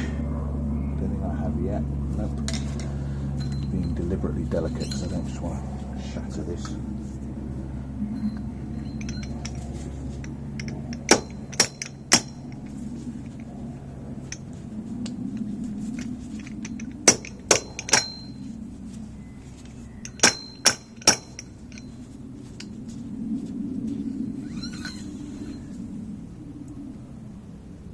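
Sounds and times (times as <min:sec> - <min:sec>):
light sharp metal clinks: 0:02.5 - 0:05.6, 0:08.2 - 0:23.0.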